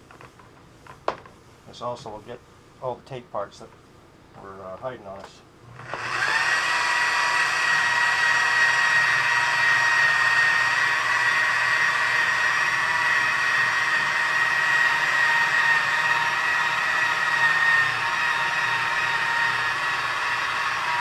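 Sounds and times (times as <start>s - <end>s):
electric polisher whine: 5.7s - 21.0s.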